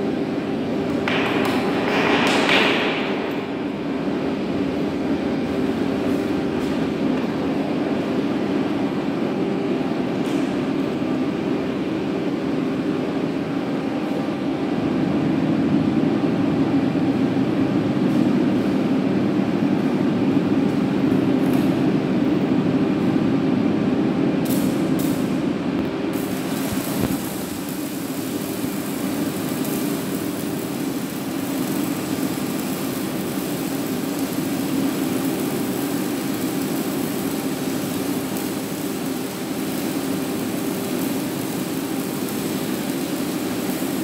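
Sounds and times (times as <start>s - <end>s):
machine droning: 0.0s - 44.0s.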